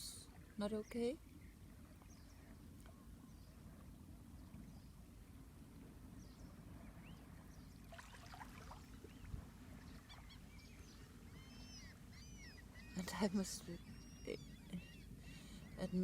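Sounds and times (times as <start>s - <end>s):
low rumble of surf: 0.0s - 16.0s
high chirping bird calls: 9.9s - 16.0s.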